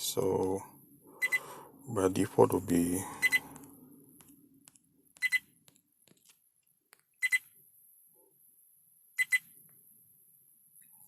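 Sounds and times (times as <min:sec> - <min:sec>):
short high beeps: 0:03.2 - 0:03.4.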